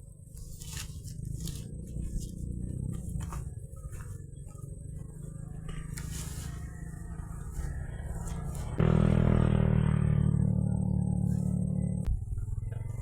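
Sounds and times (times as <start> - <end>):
engine running: 0.0 - 13.0.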